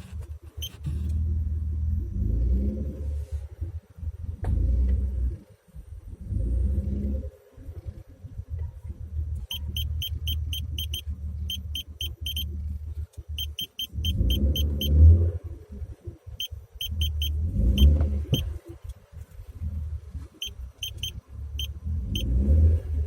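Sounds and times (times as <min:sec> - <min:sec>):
drivetrain droning: 0:00.0 - 0:23.0
short rapid high beeps: 0:09.5 - 0:12.5, 0:13.4 - 0:15.0, 0:16.4 - 0:18.5, 0:20.4 - 0:22.3.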